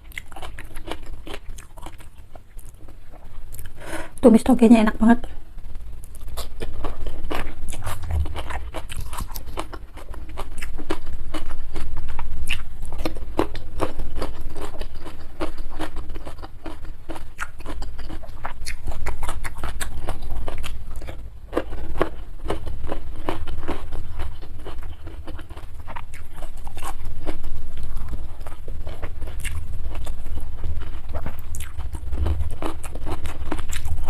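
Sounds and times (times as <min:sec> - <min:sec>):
low steady rumble: 0:00.0 - 0:34.0
wet chewing mouth clicks: 0:07.3 - 0:11.0.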